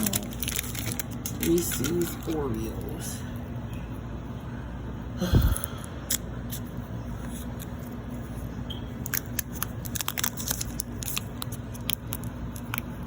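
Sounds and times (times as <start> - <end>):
plastic wrapper crinkling: 0.0 - 3.0, 9.0 - 13.0
steady low hum: 0.0 - 13.0.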